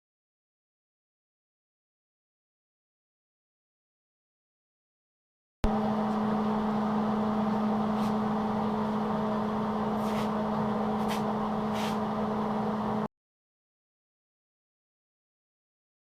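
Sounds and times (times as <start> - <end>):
machine humming: 5.6 - 13.1
short hissing scrapes: 10.0 - 10.4, 11.0 - 12.0.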